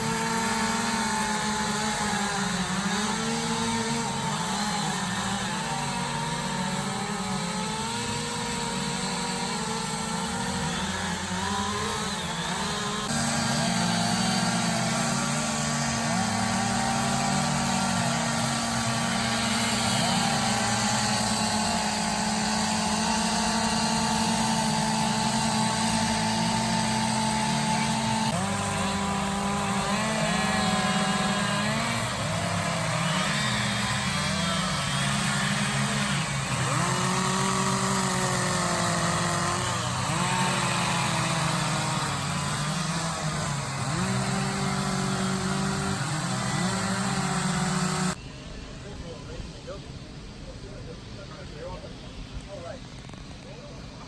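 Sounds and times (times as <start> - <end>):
chainsaws cutting wood: 0.0 - 48.2, 52.5 - 53.9.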